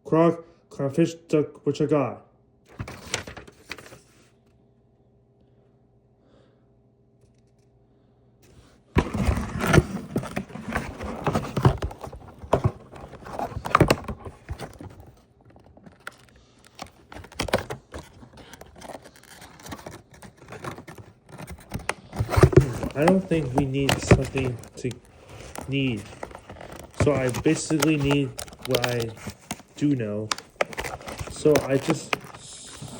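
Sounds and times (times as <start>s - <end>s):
toy packaging handled: 2.7s - 4.2s, 8.5s - 32.9s.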